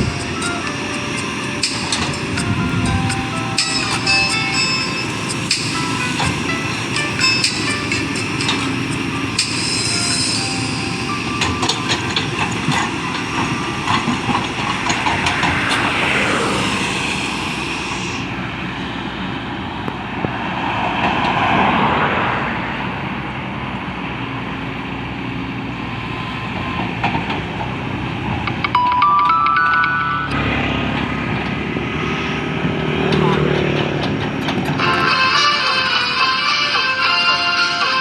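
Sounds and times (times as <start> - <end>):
machine whine: 0.0 - 18.5
excavator machine noise: 0.0 - 38.0.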